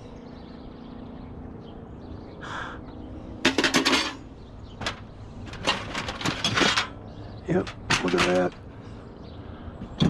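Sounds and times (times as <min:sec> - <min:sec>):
scrap junk rattling and clattering: 0:03.4 - 0:08.7.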